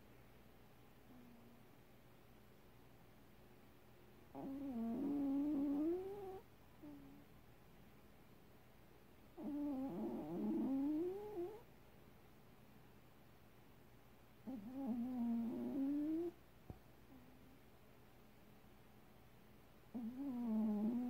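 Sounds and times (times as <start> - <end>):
cat snoring: 4.3 - 7.2, 9.4 - 11.6, 14.4 - 16.4, 19.9 - 21.0.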